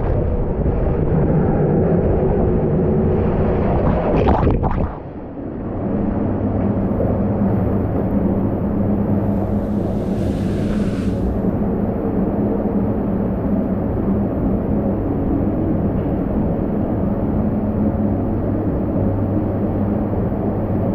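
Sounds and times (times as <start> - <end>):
low rumble in water slide tube: 0.0 - 14.4
rushing water hiss: 9.1 - 11.6.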